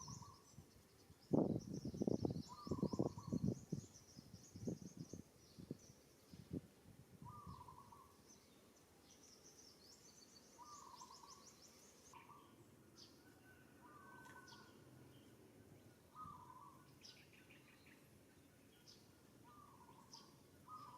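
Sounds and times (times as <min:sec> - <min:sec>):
bird trill: 0:00.0 - 0:00.6, 0:01.6 - 0:05.0, 0:07.3 - 0:08.5, 0:09.1 - 0:18.1, 0:18.7 - 0:20.9
thin high bird chirps: 0:09.2 - 0:15.4.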